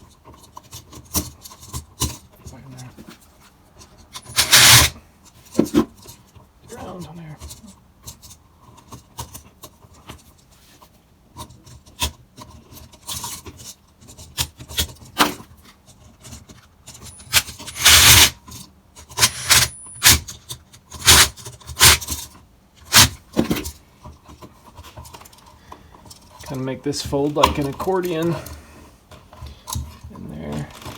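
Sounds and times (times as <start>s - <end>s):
wires scraping in electrical box: 3.9s - 5.0s, 16.2s - 23.7s, 30.3s - 30.9s.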